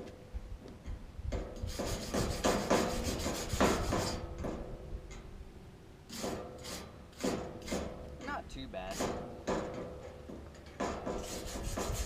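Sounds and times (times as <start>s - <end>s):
wire brush scrubbing metal: 1.6s - 4.3s, 6.1s - 7.9s, 10.8s - 12.0s.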